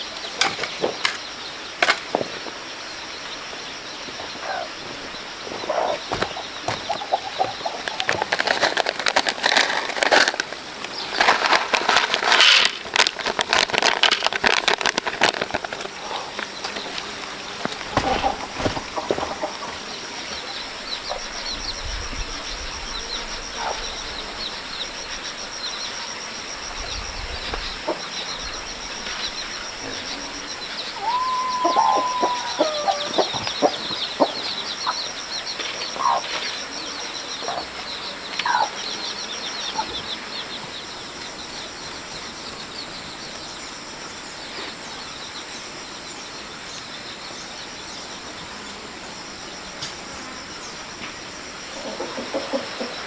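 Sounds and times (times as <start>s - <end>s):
insect chirring: 0.0s - 53.0s
bird calling: 3.3s - 21.8s, 27.8s - 44.1s.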